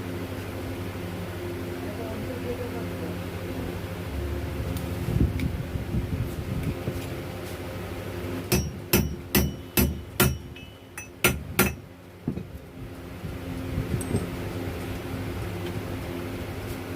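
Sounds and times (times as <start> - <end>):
hammer striking metal: 8.5 - 11.8.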